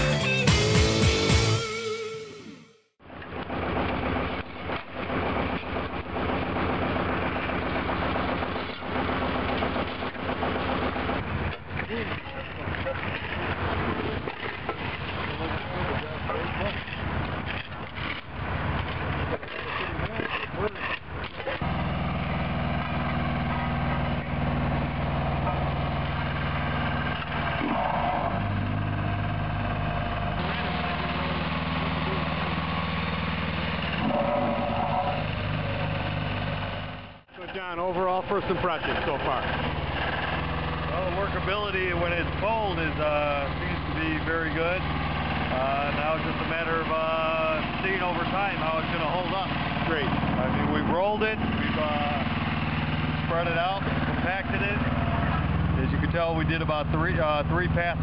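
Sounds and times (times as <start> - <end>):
title music: 0.0 - 2.9
low hum: 0.5 - 56.1
engine running steadily: 3.0 - 58.0.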